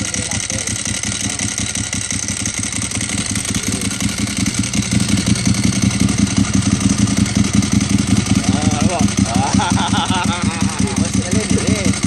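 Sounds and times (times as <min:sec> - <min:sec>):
clutch rattle: 0:00.0 - 0:09.6
motorcycle engine idling: 0:00.0 - 0:12.0.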